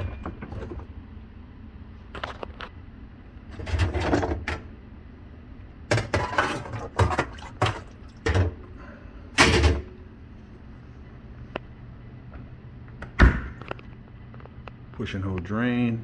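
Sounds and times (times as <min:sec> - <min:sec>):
dishwasher clunks and scrapes: 0:00.0 - 0:00.9, 0:03.5 - 0:04.7, 0:05.9 - 0:08.7, 0:09.4 - 0:10.0
low steady hum: 0:00.0 - 0:16.0.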